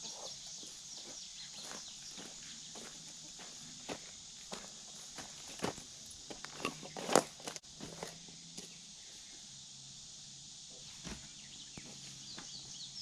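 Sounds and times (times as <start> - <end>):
footsteps: 0.0 - 8.8
birds chirping: 0.0 - 9.7, 10.6 - 13.0
faint outdoor background: 0.0 - 13.0.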